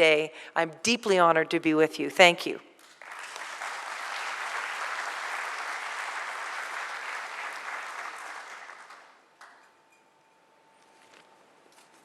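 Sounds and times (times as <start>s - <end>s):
audience applauding: 2.9s - 9.3s.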